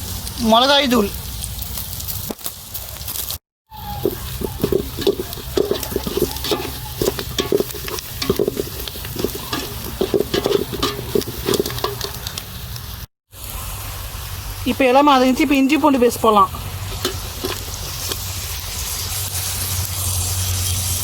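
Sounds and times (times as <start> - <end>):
onions sizzling in oil: 0.0 - 21.0
ladle scraping a pot: 3.7 - 12.6, 16.9 - 18.3.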